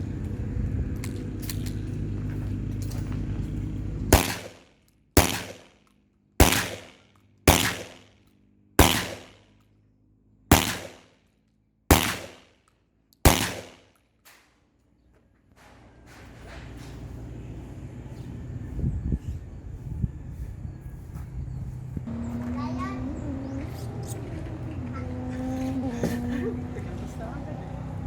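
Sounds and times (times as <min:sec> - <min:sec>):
shotgun shots with echo: 0:04.1 - 0:05.8, 0:06.4 - 0:08.1, 0:08.8 - 0:09.4, 0:10.5 - 0:11.1, 0:11.9 - 0:12.5, 0:13.2 - 0:13.9.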